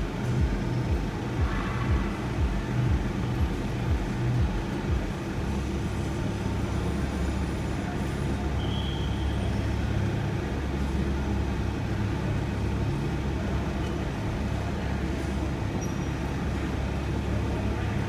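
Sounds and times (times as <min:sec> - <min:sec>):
van engine and road noise: 0:00.0 - 0:18.0.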